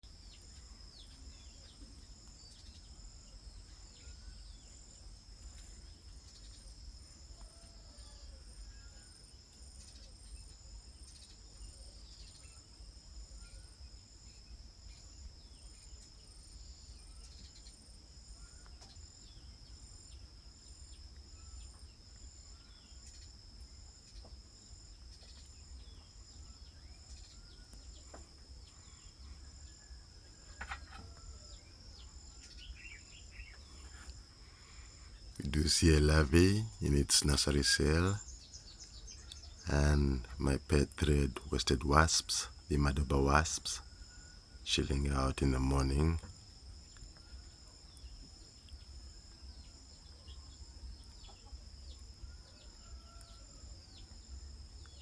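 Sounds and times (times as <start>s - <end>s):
cricket-like insect trill: 0.0s - 55.0s
pulsing insect chirps: 0.0s - 55.0s.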